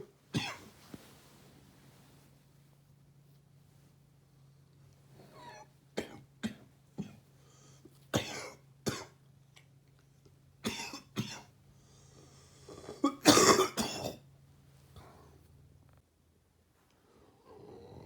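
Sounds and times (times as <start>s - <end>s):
man coughing: 12.9s - 14.2s.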